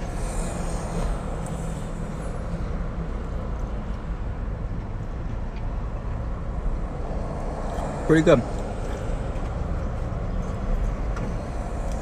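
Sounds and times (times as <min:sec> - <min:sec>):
car air conditioner hiss: 0:00.0 - 0:04.5.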